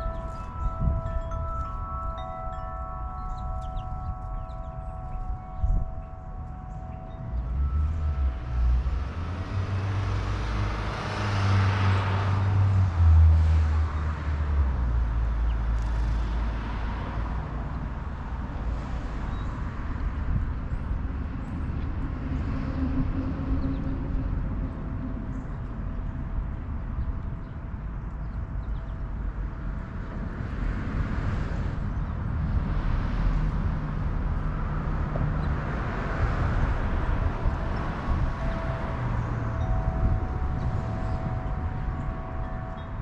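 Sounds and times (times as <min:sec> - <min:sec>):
vehicle passing: 0:00.0 - 0:19.1, 0:30.5 - 0:43.0.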